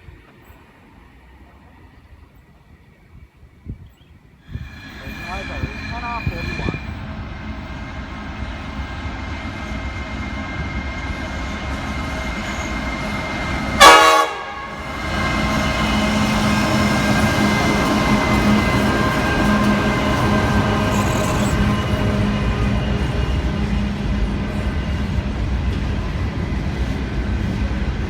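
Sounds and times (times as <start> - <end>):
train rumbling: 0.0 - 28.0
train horn blast: 13.6 - 23.8.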